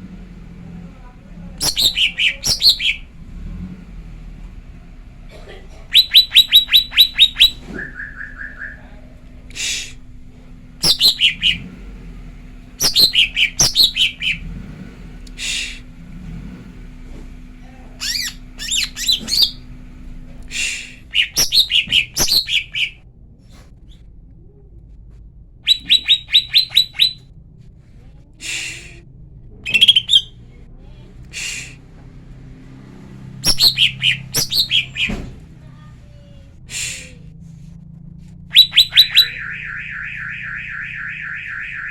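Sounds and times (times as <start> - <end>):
bird chirping sharply: 1.6 - 3.1, 5.9 - 8.9, 10.8 - 11.7, 12.8 - 14.5, 18.0 - 19.6, 20.6 - 23.0, 25.7 - 27.2, 29.7 - 30.4, 33.4 - 35.9, 38.5 - 41.9.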